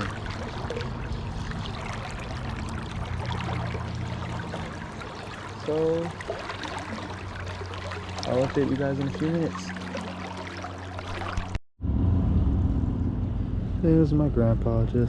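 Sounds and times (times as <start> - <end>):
creek water flowing: 0.0 - 11.6.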